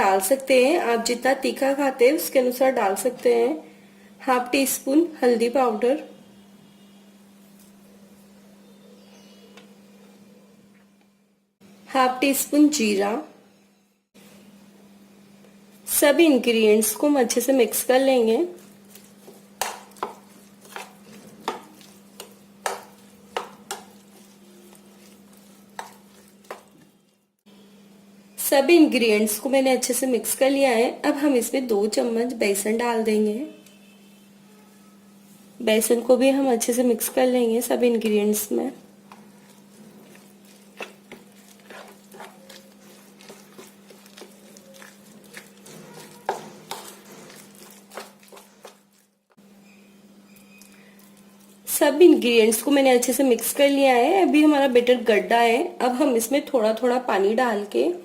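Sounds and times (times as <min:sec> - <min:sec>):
stirring thick mixture in bowl: 0:17.0 - 0:27.2, 0:36.4 - 0:49.4.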